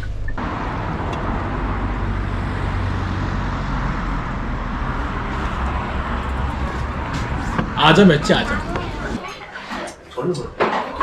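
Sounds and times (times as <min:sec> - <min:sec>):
van engine hum: 0:00.0 - 0:09.4
road noise: 0:00.0 - 0:11.0.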